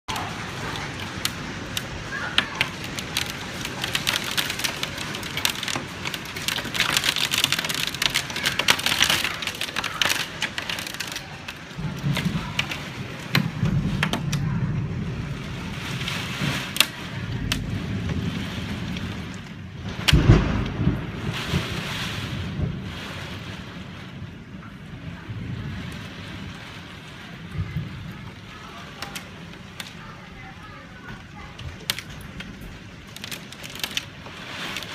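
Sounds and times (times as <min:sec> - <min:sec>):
low rumbling: 0:00.0 - 0:34.9
hail falling: 0:00.1 - 0:34.9
hailstones clicking: 0:00.1 - 0:34.9.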